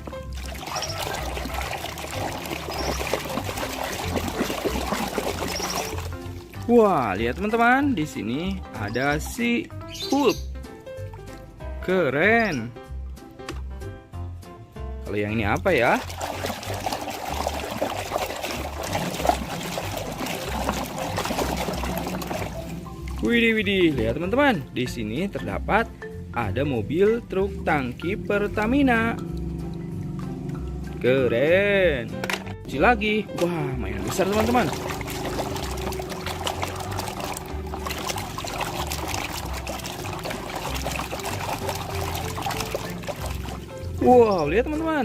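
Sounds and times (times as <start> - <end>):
small splashes and drips: 0.0 - 8.4, 11.0 - 11.6, 15.5 - 24.2, 33.4 - 44.4
water trickling over toys: 0.0 - 8.5, 15.5 - 24.2, 33.8 - 44.6.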